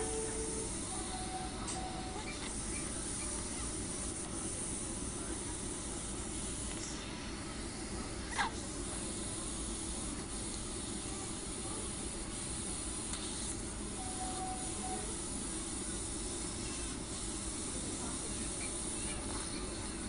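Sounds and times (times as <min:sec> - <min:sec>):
steady hiss: 0:00.0 - 0:20.0.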